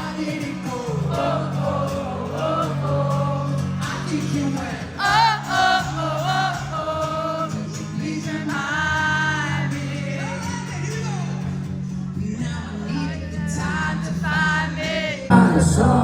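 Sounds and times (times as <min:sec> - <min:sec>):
crowd singing along: 0:00.0 - 0:11.5, 0:12.2 - 0:16.0
man singing: 0:00.0 - 0:11.5, 0:12.1 - 0:16.0
acoustic guitar chords: 0:00.0 - 0:16.0.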